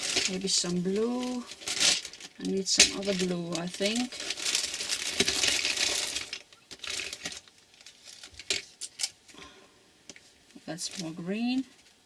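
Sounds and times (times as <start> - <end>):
pencils clattering together: 0.0 - 7.4.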